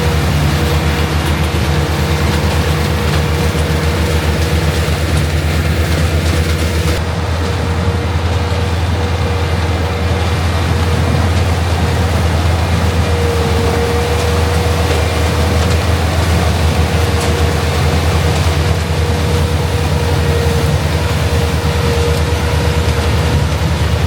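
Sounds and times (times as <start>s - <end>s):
diesel engine drone: 0.0s - 24.0s
steady machine whine: 0.0s - 24.0s.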